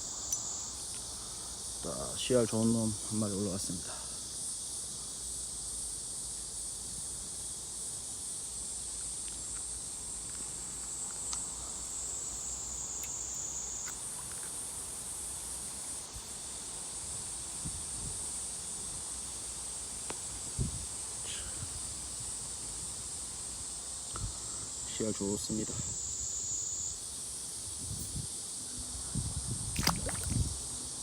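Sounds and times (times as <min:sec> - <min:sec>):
insects chorus: 0:00.0 - 0:31.0
faint ticks: 0:00.2 - 0:01.1, 0:12.9 - 0:14.6, 0:24.1 - 0:24.3.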